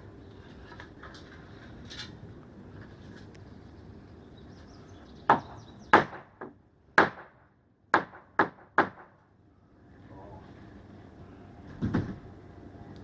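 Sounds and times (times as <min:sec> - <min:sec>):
hammer striking wood: 0:05.3 - 0:09.1.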